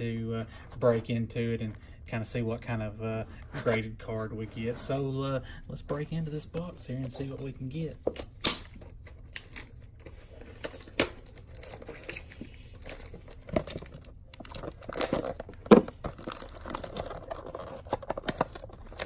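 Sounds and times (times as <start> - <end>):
cardboard packaging tearing: 8.4 - 19.0.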